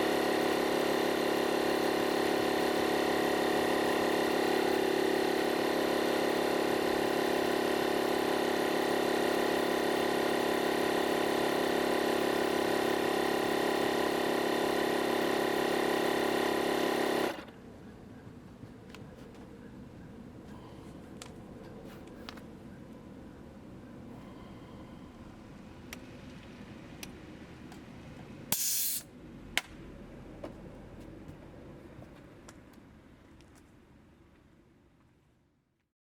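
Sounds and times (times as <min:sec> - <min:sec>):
air compressor motor drone: 0:00.0 - 0:17.5, 0:23.9 - 0:27.4, 0:28.0 - 0:29.1.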